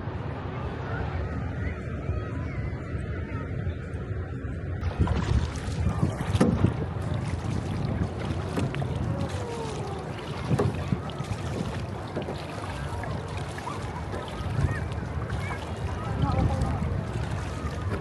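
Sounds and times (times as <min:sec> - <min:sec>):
wind buffeting microphone: 0:00.9 - 0:18.0
water washing on beach: 0:04.8 - 0:18.0.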